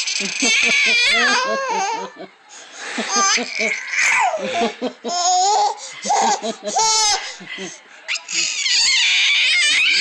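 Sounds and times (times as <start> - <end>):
baby laughing and squealing: 0.1 - 2.1, 3.1 - 4.4, 8.1 - 10.0.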